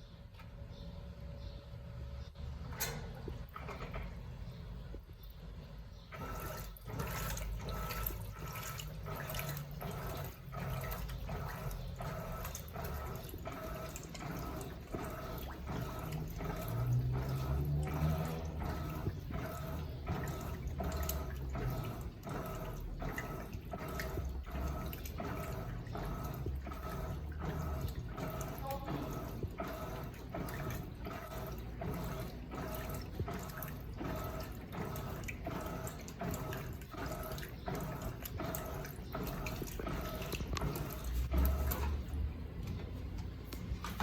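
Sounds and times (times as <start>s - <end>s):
washing machine low hum: 0.0s - 44.0s
water sloshing in washing machine: 2.5s - 44.0s.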